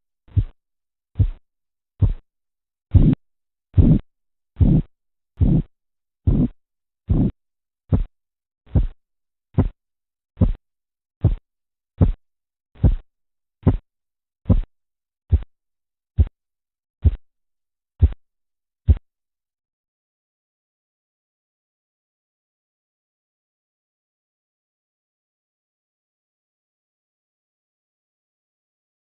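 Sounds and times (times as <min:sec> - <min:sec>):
pulse beats through stethoscope: 0:00.3 - 0:00.6, 0:01.2 - 0:01.4, 0:02.0 - 0:02.2, 0:02.9 - 0:03.2, 0:03.8 - 0:04.0, 0:04.6 - 0:08.1, 0:08.7 - 0:09.0, 0:09.6 - 0:09.8, 0:10.4 - 0:10.6, 0:11.2 - 0:11.4, 0:12.0 - 0:12.2, 0:12.8 - 0:13.8, 0:14.5 - 0:14.7, 0:15.3 - 0:15.5, 0:16.2 - 0:16.4, 0:17.0 - 0:17.2, 0:18.0 - 0:18.2.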